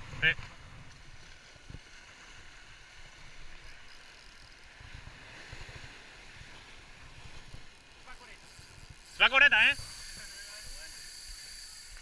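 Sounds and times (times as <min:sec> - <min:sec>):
sea surf hiss: 0:01.6 - 0:12.0.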